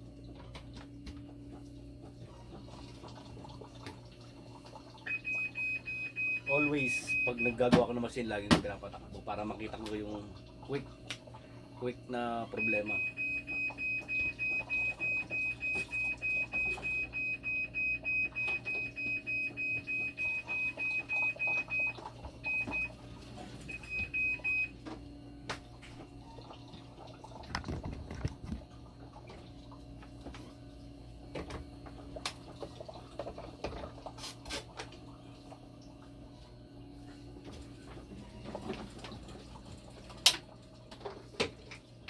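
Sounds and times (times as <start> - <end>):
low steady hum: 0.0 - 42.0
machine alarm beeping rapidly: 5.0 - 7.7, 12.3 - 23.0, 23.7 - 24.7.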